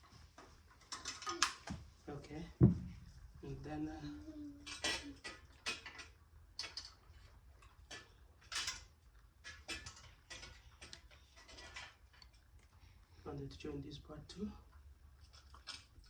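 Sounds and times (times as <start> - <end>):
metallic clicks of bicycle parts: 4.7 - 12.7.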